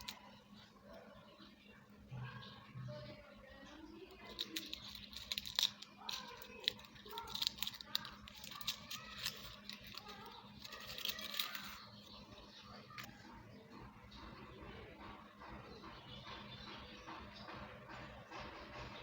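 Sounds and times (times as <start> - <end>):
foil wrappers crinkling: 4.0 - 12.2.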